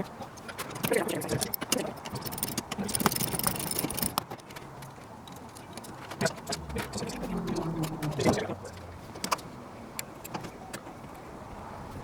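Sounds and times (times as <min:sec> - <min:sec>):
clicks and knocks on metal parts: 0:00.4 - 0:06.3.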